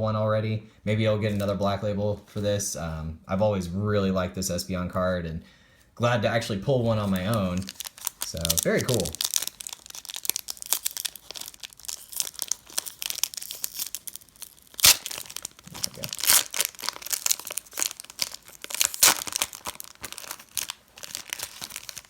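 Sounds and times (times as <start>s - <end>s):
wrapper crinkling and tearing: 6.8s - 22.0s.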